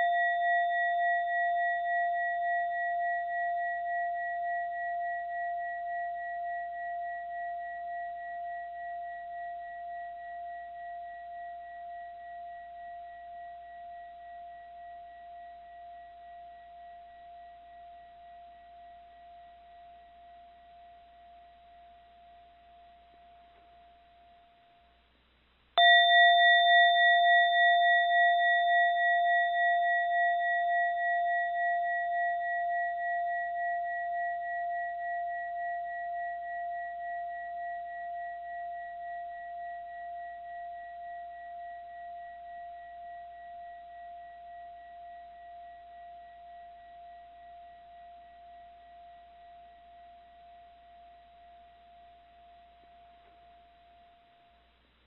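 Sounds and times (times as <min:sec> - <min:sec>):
mindfulness bell ringing: 0:25.8 - 0:33.6.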